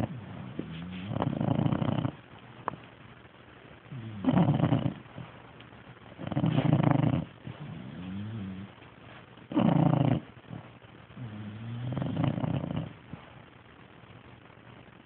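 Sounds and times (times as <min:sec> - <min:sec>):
pet snoring: 0:00.0 - 0:02.2, 0:03.9 - 0:05.3, 0:06.2 - 0:08.8, 0:09.5 - 0:13.4.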